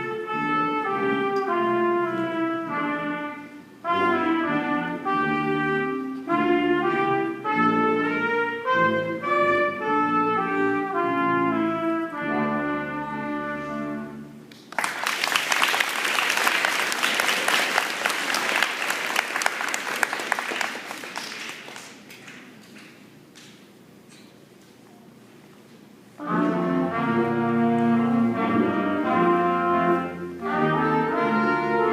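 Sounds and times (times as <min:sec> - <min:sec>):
wind band playing chords: 0:00.0 - 0:14.5, 0:26.2 - 0:31.9
audience applauding: 0:14.5 - 0:23.0.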